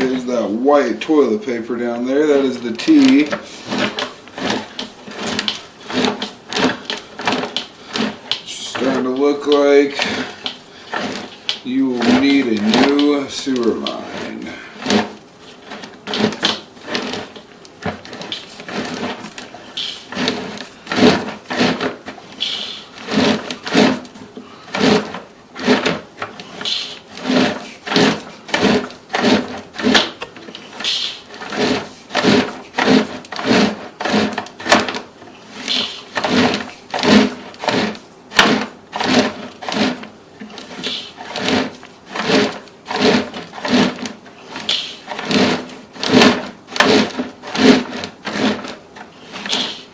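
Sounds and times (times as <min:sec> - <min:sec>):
cable rubbing and knocking in drain: 0:00.0 - 0:49.9.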